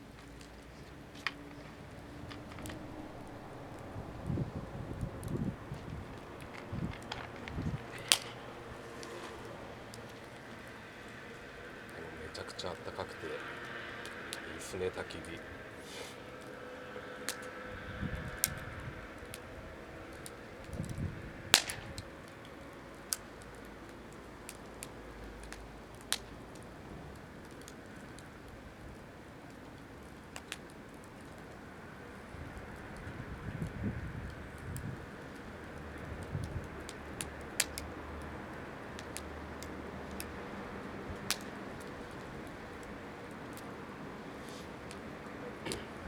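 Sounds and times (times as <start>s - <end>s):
firewood crackling and popping: 0.0s - 46.0s.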